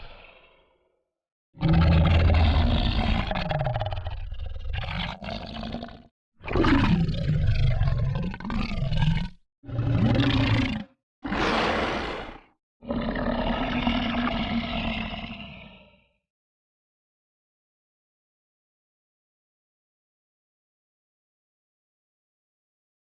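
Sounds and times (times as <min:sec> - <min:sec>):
growling monster snarls: 0:01.6 - 0:04.1, 0:04.7 - 0:16.2.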